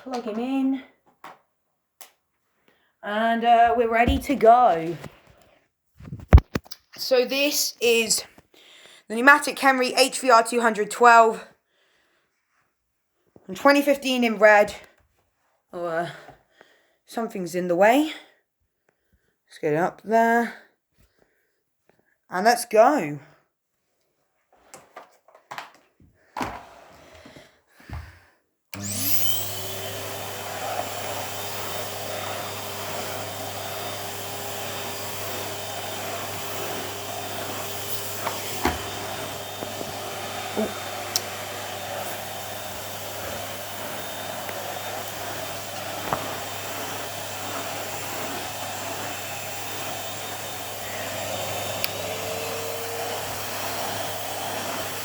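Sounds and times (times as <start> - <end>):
vacuum cleaner motor whining: 3.7 - 5.1, 28.7 - 55.0.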